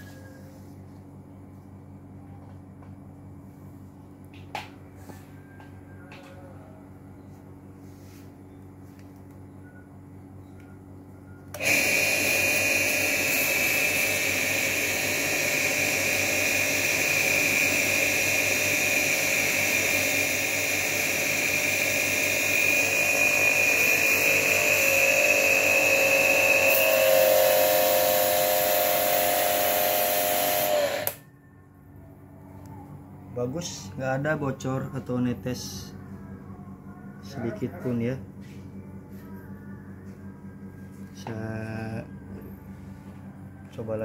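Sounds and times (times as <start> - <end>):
pressure washer motor whining: 11.4 - 31.2.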